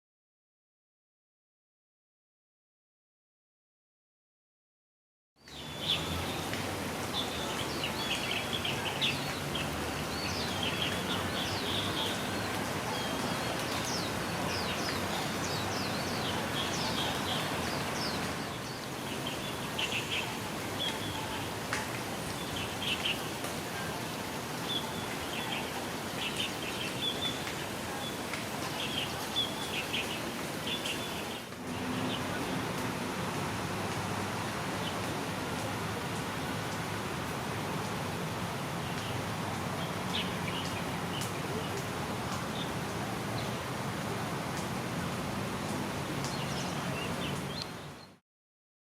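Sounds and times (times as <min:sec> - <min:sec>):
small birds chirping: 0:05.4 - 0:32.8, 0:38.8 - 0:42.8, 0:46.2 - 0:48.2
flowing water rushing: 0:05.4 - 0:48.2.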